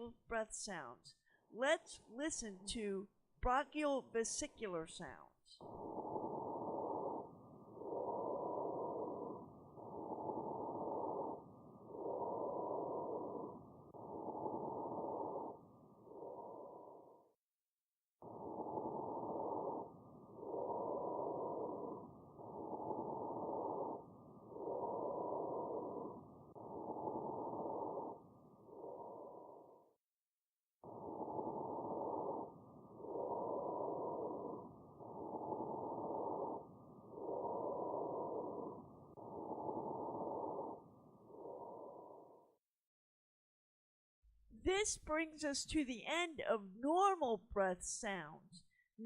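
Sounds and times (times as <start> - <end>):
muffled breathing through stethoscope: 5.6 - 17.2, 30.9 - 42.5.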